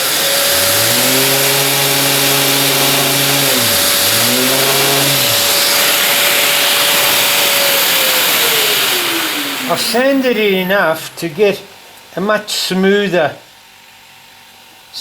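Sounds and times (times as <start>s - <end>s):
power sander on wood: 0.0s - 11.6s
vacuum pump hiss: 0.0s - 12.0s.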